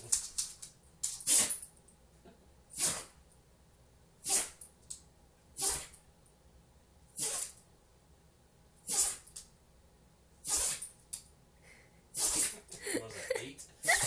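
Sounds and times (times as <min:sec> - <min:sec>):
dog sneezing: 0:01.2 - 0:01.6, 0:02.7 - 0:03.2, 0:04.2 - 0:04.6, 0:05.6 - 0:06.0, 0:07.2 - 0:07.6, 0:08.8 - 0:09.4, 0:10.4 - 0:11.0, 0:12.1 - 0:12.7.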